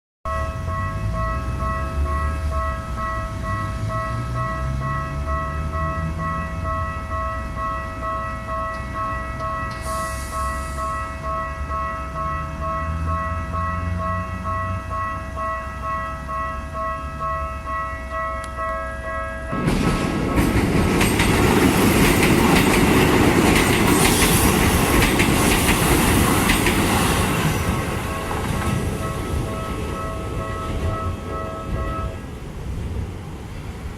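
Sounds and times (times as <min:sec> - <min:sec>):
train wheels clattering: 0:19.5 - 0:31.9
level crossing alarm dinging: 0:27.5 - 0:32.3.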